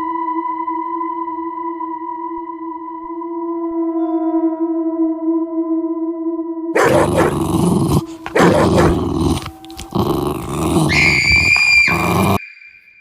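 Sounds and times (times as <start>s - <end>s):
dog growling: 6.8s - 12.4s.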